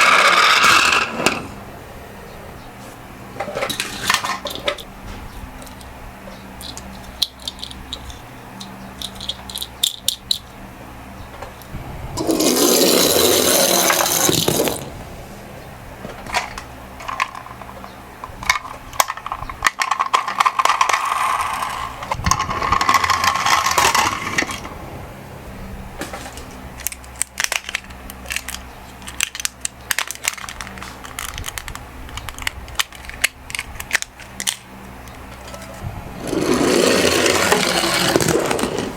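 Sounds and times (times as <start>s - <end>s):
toy cars clicking and clattering: 0.0s - 1.4s, 3.4s - 4.9s, 6.6s - 10.4s, 12.2s - 14.8s, 16.2s - 24.7s, 26.0s - 38.9s.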